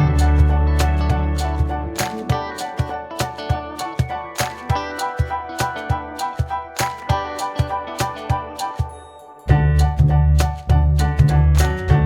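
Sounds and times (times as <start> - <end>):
deep bass note: 0.0 - 1.8, 9.5 - 12.0
upbeat background music: 0.0 - 12.0.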